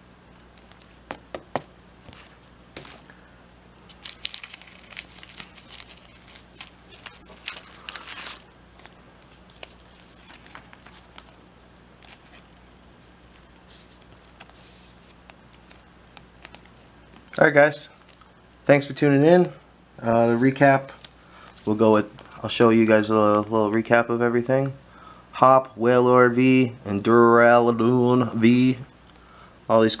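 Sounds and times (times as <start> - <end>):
plastic sleeves crinkling: 3.8 - 11.4, 12.0 - 12.5.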